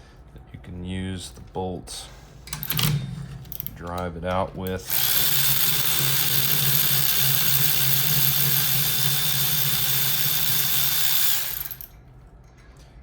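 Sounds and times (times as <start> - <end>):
machine whining and humming: 2.5 - 12.0.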